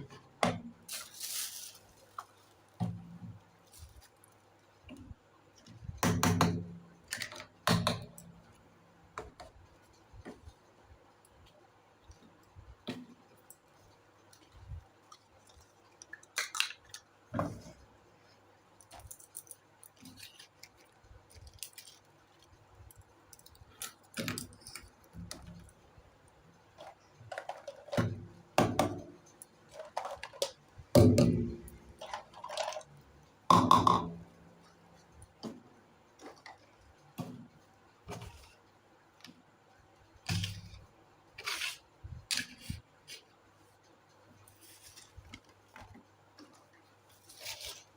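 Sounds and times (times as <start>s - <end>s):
plastic toy pieces clattering: 0.9s - 2.4s, 18.8s - 22.5s, 29.7s - 30.6s, 32.0s - 32.9s.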